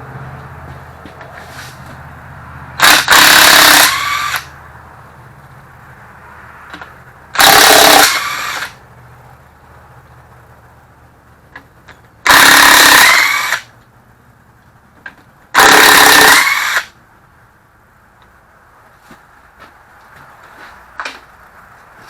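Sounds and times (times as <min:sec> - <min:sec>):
cordless power tool whining: 0:02.8 - 0:04.5, 0:07.4 - 0:08.7, 0:12.3 - 0:13.7, 0:15.6 - 0:16.9.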